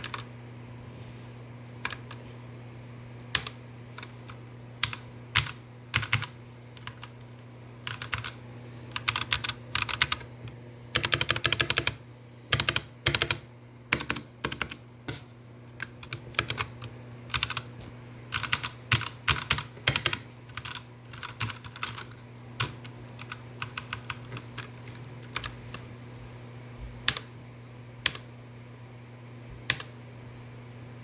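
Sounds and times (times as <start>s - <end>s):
typing on mechanical keyboard: 0.0s - 0.3s, 1.8s - 2.2s, 3.3s - 4.2s, 4.8s - 7.2s, 7.8s - 10.3s, 10.9s - 15.2s, 15.8s - 17.7s, 18.3s - 25.8s
steady low hum: 0.0s - 31.0s.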